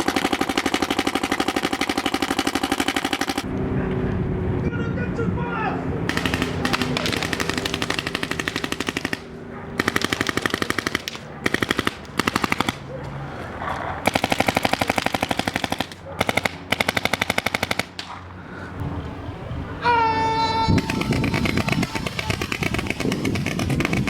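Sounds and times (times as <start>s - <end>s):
paintball marker firing bursts: 0.0s - 3.5s, 6.1s - 12.9s, 14.0s - 18.2s, 20.8s - 24.0s.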